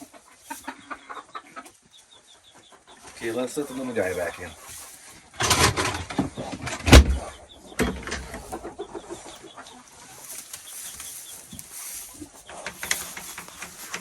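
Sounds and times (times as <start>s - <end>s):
chickens clucking: 0.0s - 14.0s.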